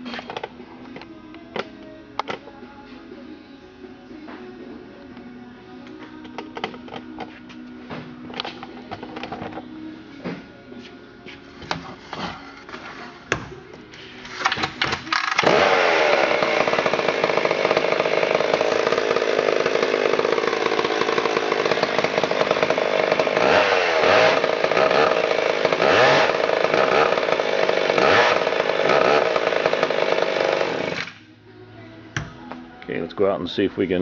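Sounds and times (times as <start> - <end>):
chainsaw engine running: 15.1 - 31.2.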